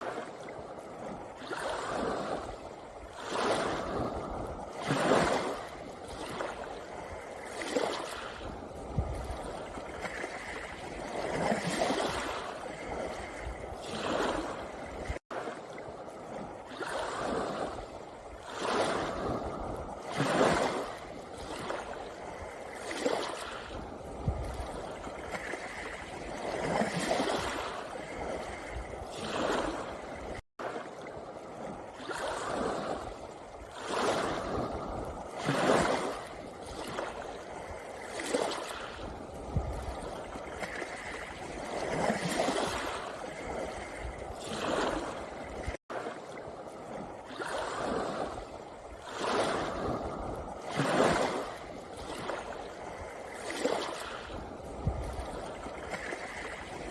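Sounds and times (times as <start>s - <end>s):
sea waves on pebble beach: 0.0s - 56.9s.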